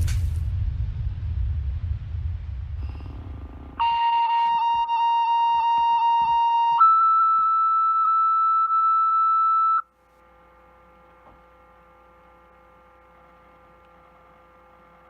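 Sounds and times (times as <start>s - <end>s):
two-tone paging tones: 3.8s - 9.8s.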